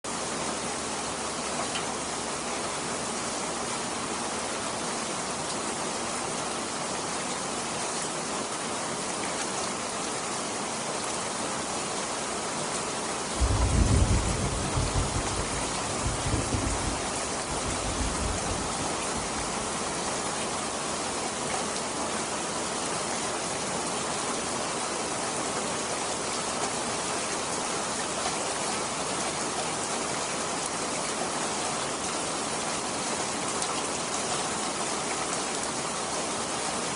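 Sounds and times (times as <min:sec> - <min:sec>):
steady rain falling: 0:00.0 - 0:36.9
thunderclap rumbling: 0:13.4 - 0:19.6.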